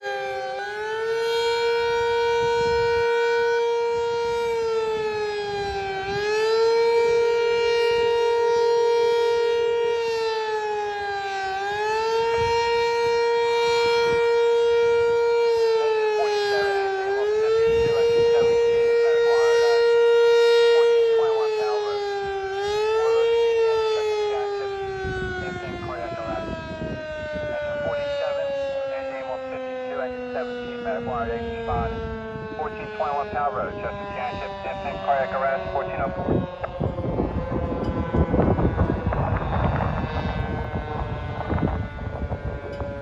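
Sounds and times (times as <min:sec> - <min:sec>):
fire siren wailing: 0:00.0 - 0:43.0.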